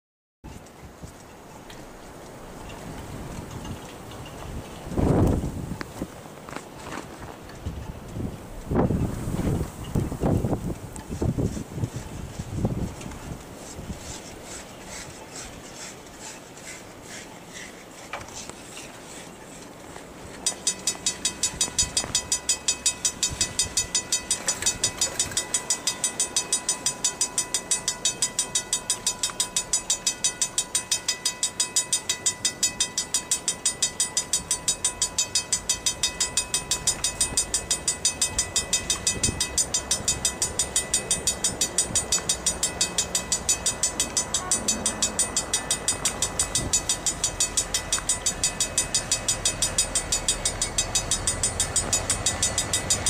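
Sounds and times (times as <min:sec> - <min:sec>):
train rumble: 0:00.5 - 0:53.0
level-crossing warning bell: 0:18.7 - 0:53.0.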